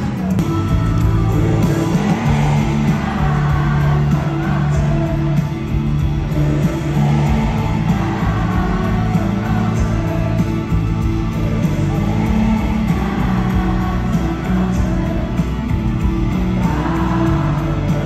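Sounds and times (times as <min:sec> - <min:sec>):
instrumental pop song: 0:00.0 - 0:18.0.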